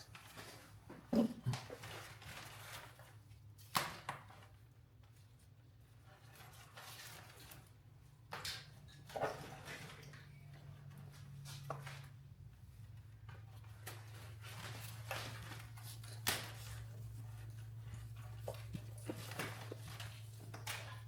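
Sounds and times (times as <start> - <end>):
wire connectors clicking and rustling: 13.2 - 21.0.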